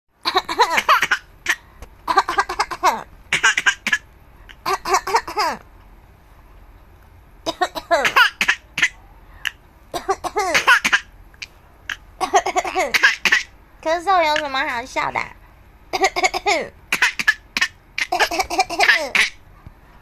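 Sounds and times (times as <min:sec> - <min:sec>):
baby laughing: 0:00.2 - 0:04.0, 0:04.6 - 0:05.6, 0:07.6 - 0:09.0, 0:10.0 - 0:11.1, 0:11.9 - 0:13.5, 0:15.9 - 0:19.4
person coughing: 0:07.5 - 0:09.0, 0:10.0 - 0:11.1.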